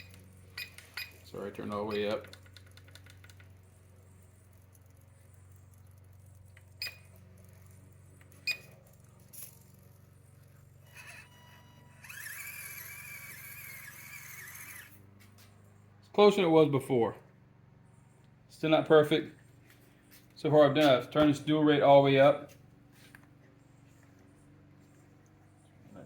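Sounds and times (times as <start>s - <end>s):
small electric motor whine: 1.9s - 15.9s.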